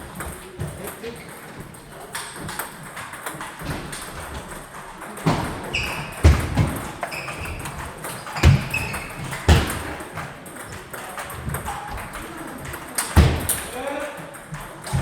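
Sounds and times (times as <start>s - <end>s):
shoes squeaking on floor: 0.0s - 15.0s.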